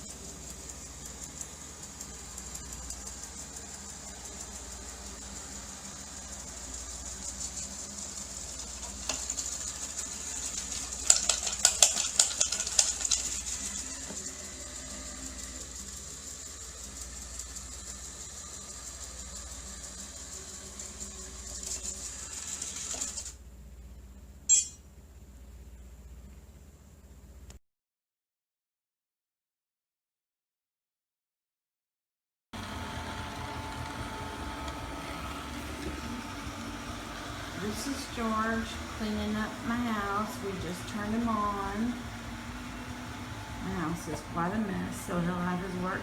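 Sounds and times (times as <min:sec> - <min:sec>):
robot vacuum motor whine: 0:00.0 - 0:23.4, 0:32.6 - 0:46.0
rattling clicks: 0:08.8 - 0:14.3
sharp click: 0:24.5 - 0:24.8.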